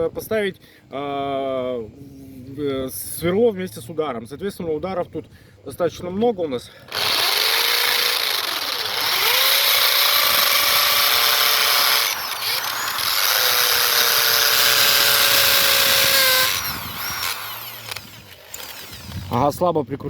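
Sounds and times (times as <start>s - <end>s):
impact drill drilling into concrete: 6.9s - 19.4s.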